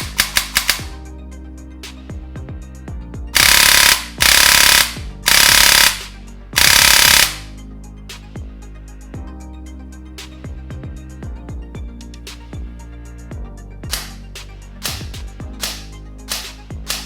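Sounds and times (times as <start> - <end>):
gel blaster full-auto bursts: 0.0 - 0.9, 3.4 - 7.5
background music: 0.0 - 17.0.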